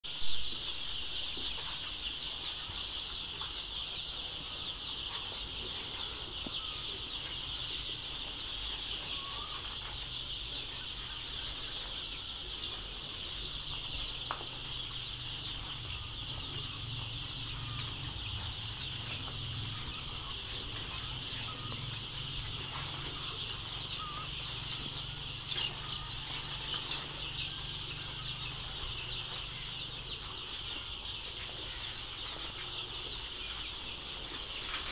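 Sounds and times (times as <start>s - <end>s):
chicks peeping: 0.0s - 34.9s.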